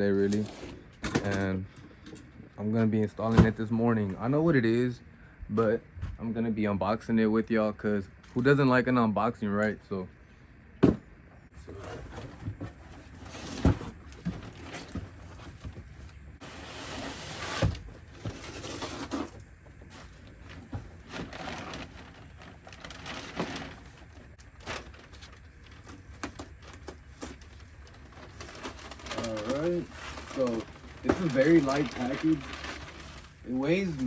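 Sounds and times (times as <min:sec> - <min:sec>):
cardboard rustling and scraping: 0:11.6 - 0:34.0.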